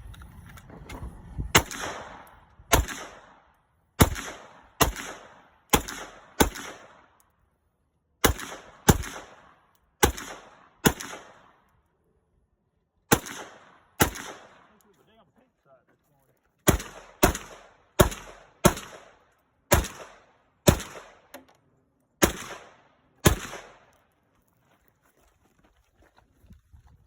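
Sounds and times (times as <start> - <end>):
echoing gunshots: 1.5 - 7.2, 8.2 - 11.6, 13.1 - 14.8, 16.6 - 21.5, 22.2 - 23.9.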